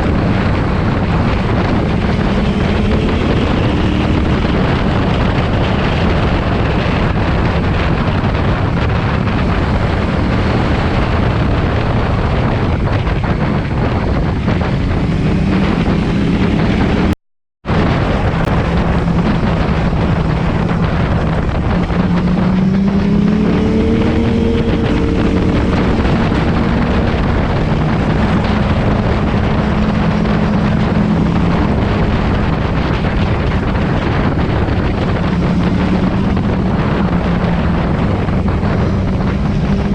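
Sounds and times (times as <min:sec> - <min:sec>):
motorcycle engine accelerating: 0:00.0 - 0:39.9
wind noise on microphone: 0:00.0 - 0:39.9.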